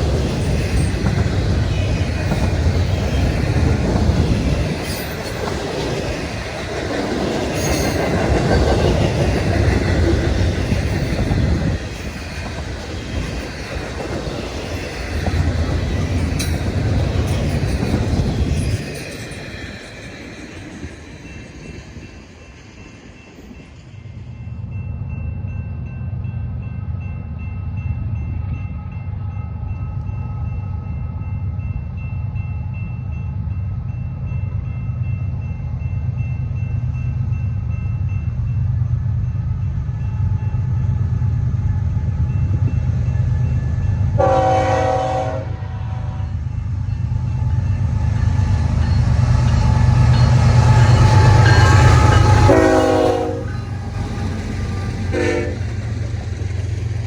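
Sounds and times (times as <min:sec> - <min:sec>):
diesel locomotives rumbling past: 0:00.0 - 0:57.0
locomotive air horn blasts: 0:44.2 - 0:46.3, 0:52.3 - 0:53.6, 0:55.1 - 0:55.7.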